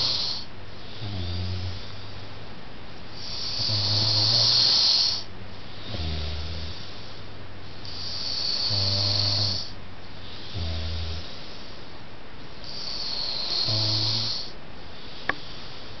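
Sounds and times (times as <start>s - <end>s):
person snoring heavily: 0.0s - 2.0s, 3.2s - 7.2s, 7.8s - 9.7s, 10.3s - 11.7s, 12.6s - 14.6s.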